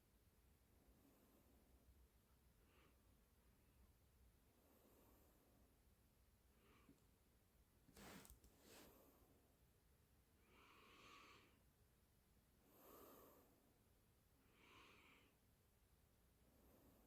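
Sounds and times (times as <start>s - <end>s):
faint breathing: 10.4s - 11.6s, 12.6s - 13.7s, 14.4s - 15.4s.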